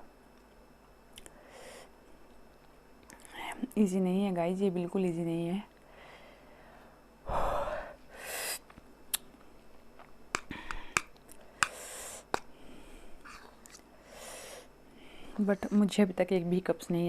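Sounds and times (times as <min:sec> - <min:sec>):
woman breathing hard and gasping: 0:05.9 - 0:08.6, 0:10.5 - 0:13.4, 0:14.0 - 0:15.4.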